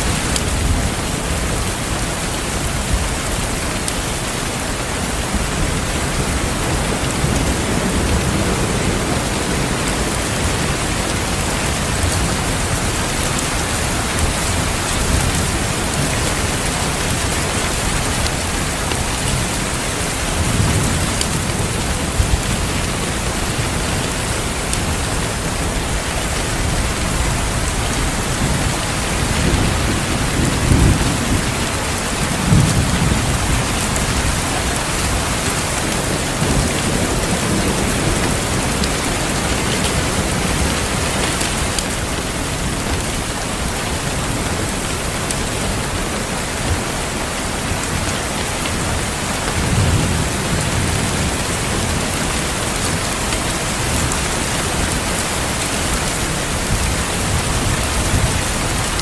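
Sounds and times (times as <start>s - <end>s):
heavy rain: 0.0s - 59.0s
low rolls of thunder: 26.6s - 41.0s.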